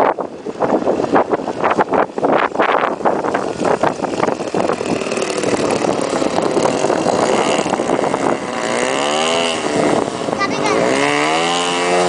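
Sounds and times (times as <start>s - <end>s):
wind gusts on microphone: 0.0s - 12.0s
small engine running: 2.9s - 12.0s.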